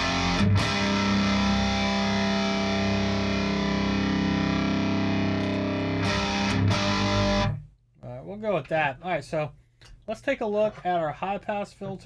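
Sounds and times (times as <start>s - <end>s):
distorted electric guitar chord: 0.0s - 7.6s.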